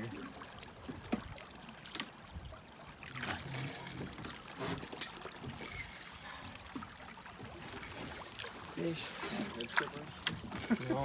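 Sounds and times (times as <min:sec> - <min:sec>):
river water flowing: 0:00.0 - 0:11.0.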